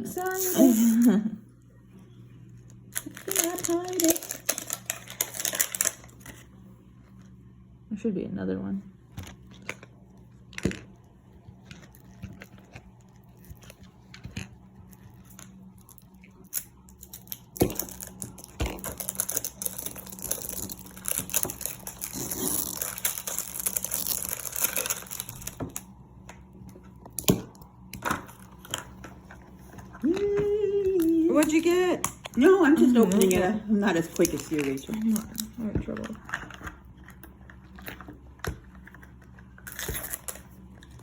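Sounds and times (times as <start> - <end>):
plastic wrapping crinkling: 2.7 - 6.6, 9.2 - 26.0, 32.4 - 41.0.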